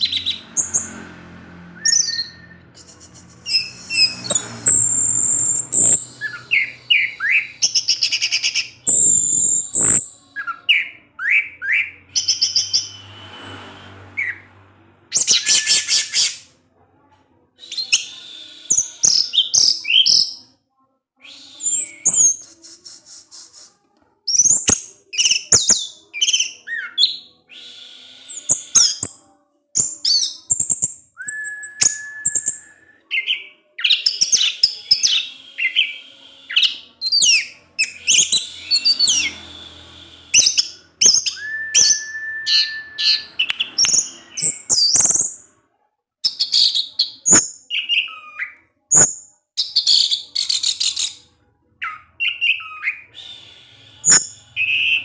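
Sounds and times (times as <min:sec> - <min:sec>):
thrush singing: 0:00.0 - 0:16.5, 0:21.2 - 0:45.2.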